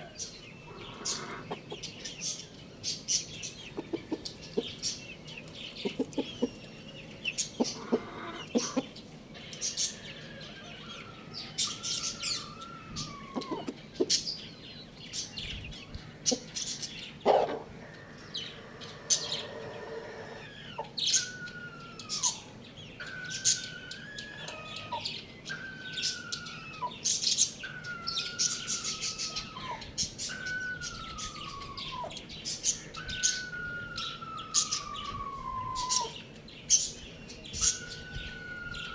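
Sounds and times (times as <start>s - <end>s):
small birds chirping: 0.0s - 38.9s
whistled call falling in pitch: 33.0s - 36.2s, 37.5s - 38.9s.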